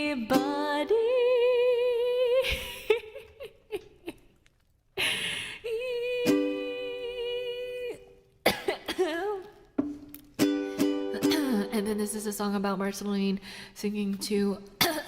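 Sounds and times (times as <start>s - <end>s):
ukulele strumming: 0.0s - 1.4s, 6.0s - 7.9s, 9.8s - 12.6s
woman singing with vibrato: 0.0s - 3.8s, 5.3s - 9.6s, 10.9s - 15.0s.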